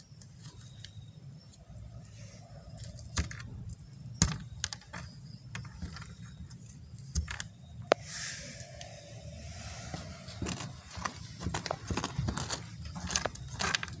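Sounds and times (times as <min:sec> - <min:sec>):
hard objects clicking and knocking: 0:02.7 - 0:08.0, 0:10.4 - 0:14.0
short hiss: 0:08.0 - 0:08.6.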